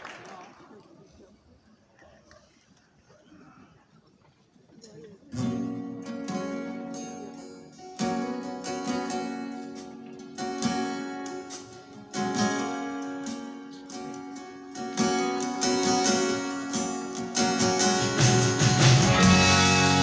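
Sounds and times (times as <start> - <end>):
guitar strumming chords: 5.4 - 20.0.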